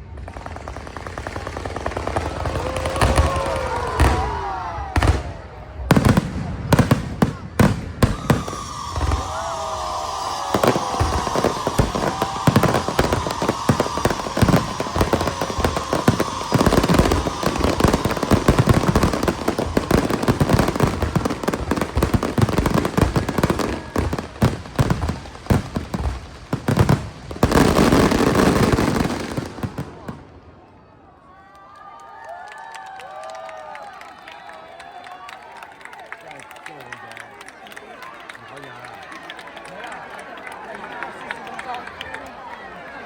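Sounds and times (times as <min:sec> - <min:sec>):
fireworks bangs and crackling: 0:00.0 - 0:30.7
fireworks whistling: 0:05.0 - 0:30.2.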